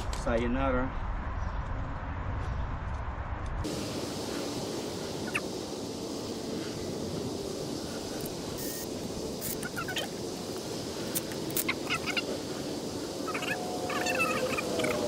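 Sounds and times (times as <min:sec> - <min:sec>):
birds chirping: 0:05.0 - 0:07.0, 0:09.4 - 0:15.0.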